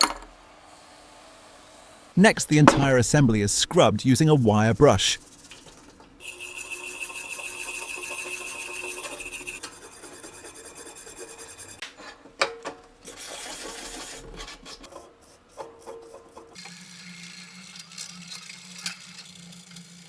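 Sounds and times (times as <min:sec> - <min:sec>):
wire brush scrubbing steel: 0:04.2 - 0:11.8.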